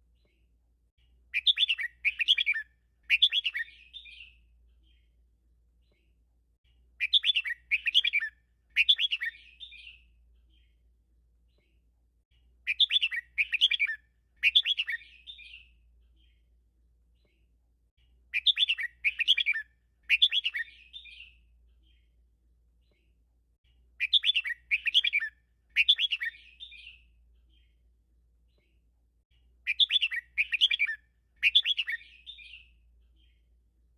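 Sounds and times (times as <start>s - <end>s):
bird singing: 1.3s - 5.1s, 7.0s - 10.8s, 12.6s - 16.5s, 18.3s - 22.2s, 24.0s - 27.8s, 29.6s - 33.5s.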